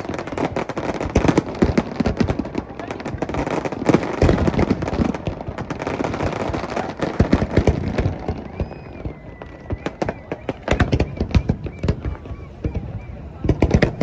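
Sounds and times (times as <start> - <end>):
firework whistle: 0.0 - 14.0
fireworks crackling and banging: 0.0 - 14.0.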